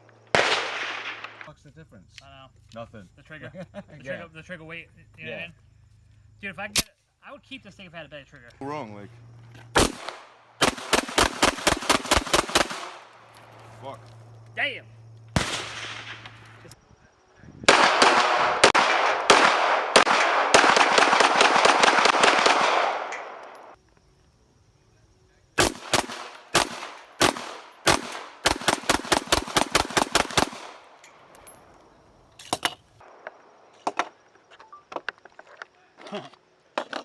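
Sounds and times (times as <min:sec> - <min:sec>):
gunshots with heavy echo: 0:09.8 - 0:13.1, 0:15.4 - 0:16.3, 0:17.7 - 0:23.4, 0:25.6 - 0:30.9.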